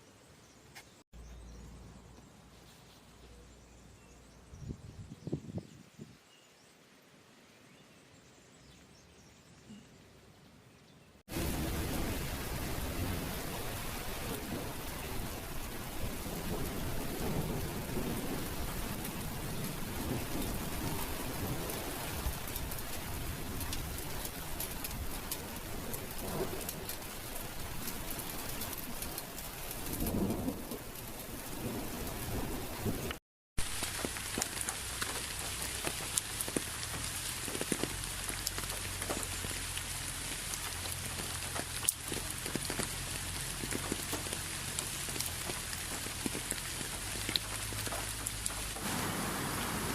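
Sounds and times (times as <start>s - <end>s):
heavy rain falling: 11.3s - 49.9s
water drips pattering: 18.4s - 31.4s, 33.6s - 49.7s.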